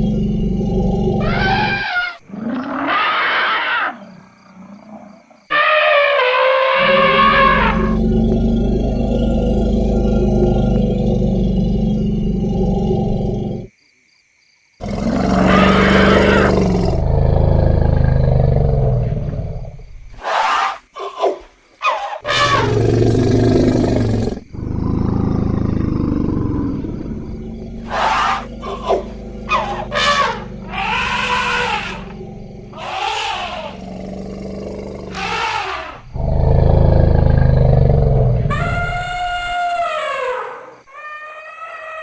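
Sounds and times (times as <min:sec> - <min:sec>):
elephants roaring and rumbling: 0:00.0 - 0:13.7, 0:22.3 - 0:40.2
elephant squeals: 0:01.2 - 0:04.0, 0:05.5 - 0:08.0, 0:20.2 - 0:22.8, 0:27.8 - 0:32.2, 0:32.8 - 0:33.8, 0:35.1 - 0:36.1, 0:38.5 - 0:42.0
elephant trumpeting: 0:01.2 - 0:04.0, 0:05.5 - 0:08.0, 0:21.8 - 0:22.8, 0:27.7 - 0:33.9, 0:35.0 - 0:36.1, 0:38.5 - 0:42.0.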